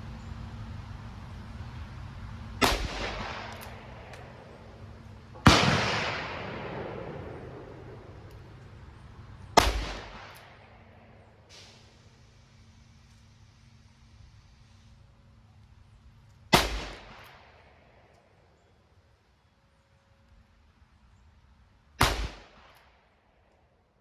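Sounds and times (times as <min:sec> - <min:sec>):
revolver gunshots with echo: 0:02.6 - 0:08.6, 0:09.5 - 0:11.9, 0:16.5 - 0:18.1, 0:22.0 - 0:23.0.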